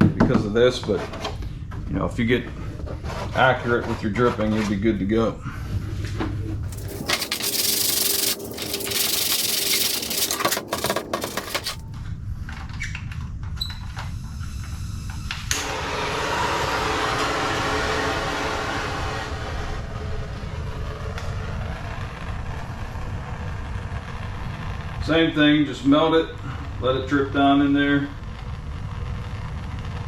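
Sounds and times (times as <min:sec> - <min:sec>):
torch flame hissing: 0:06.6 - 0:11.9, 0:14.4 - 0:30.0.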